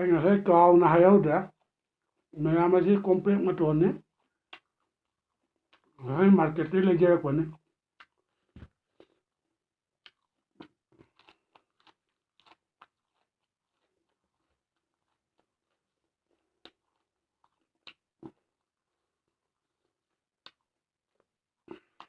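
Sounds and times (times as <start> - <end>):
crunchy vegetable chewing: 7.5 - 22.0.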